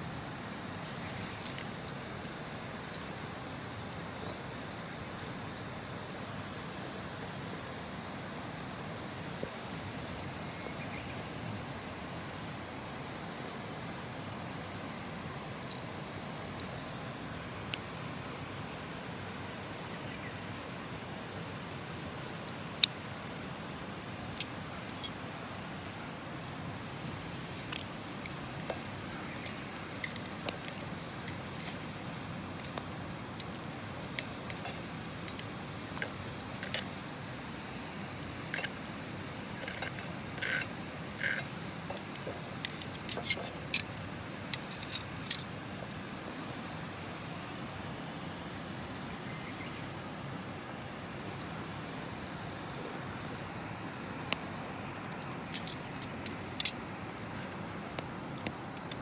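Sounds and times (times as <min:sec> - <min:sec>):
steady low hiss: 0:00.0 - 0:59.0
sharp clicks and light clinks: 0:32.6 - 0:37.0, 0:39.5 - 0:45.5, 0:55.2 - 0:59.0.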